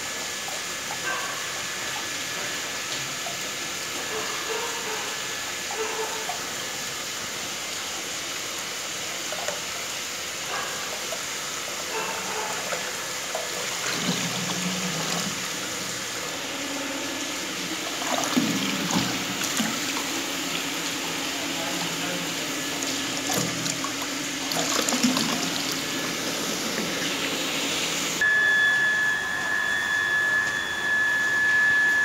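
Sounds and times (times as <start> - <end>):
water rushing through filter: 0.0 - 28.2.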